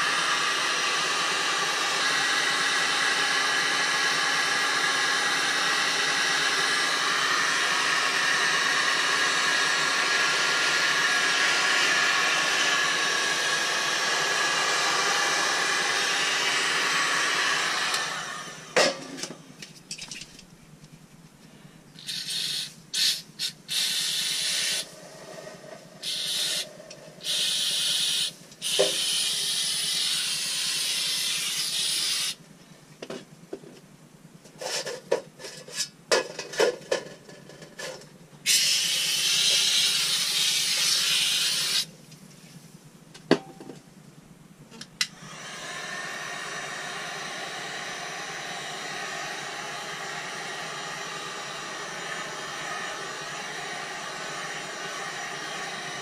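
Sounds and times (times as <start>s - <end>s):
pressurised spray hissing: 22.0s - 25.0s, 26.0s - 32.4s, 38.4s - 42.0s.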